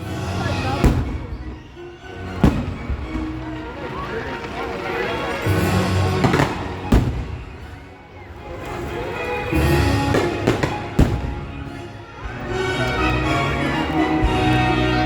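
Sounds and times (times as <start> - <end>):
music soundtrack: 0.0 - 15.0
fireworks bursting: 0.2 - 11.8.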